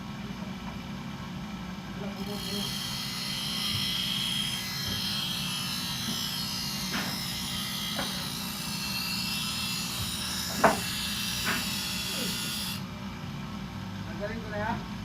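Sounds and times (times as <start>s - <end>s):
electric motor humming: 2.1s - 12.9s.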